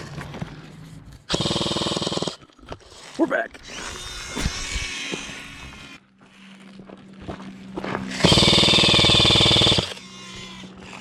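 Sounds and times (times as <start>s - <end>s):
airsoft gun rapid fire rattle: 1.3s - 2.4s, 8.2s - 10.0s
gearbox motor whine: 1.3s - 11.0s.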